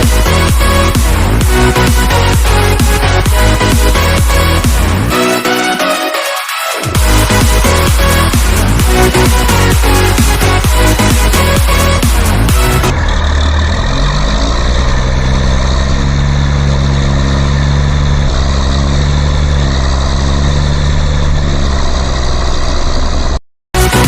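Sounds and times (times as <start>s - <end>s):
dance music: 0.0s - 13.1s, 23.7s - 24.0s
vehicle engine running: 0.0s - 24.0s.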